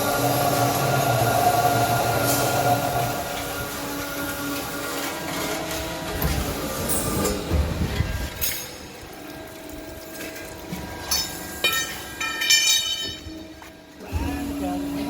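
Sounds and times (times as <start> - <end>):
metallic clanks with ringing: 11.0 - 13.5.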